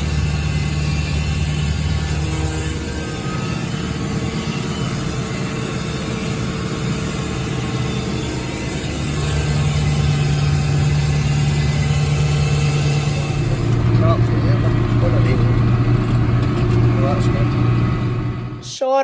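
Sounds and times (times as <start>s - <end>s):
tractor engine running: 0.0s - 18.7s.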